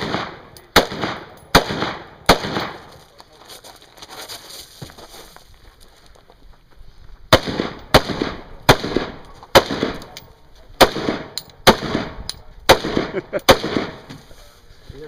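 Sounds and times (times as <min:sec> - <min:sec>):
rifle shots with echo: 0:00.0 - 0:03.0, 0:07.3 - 0:14.1.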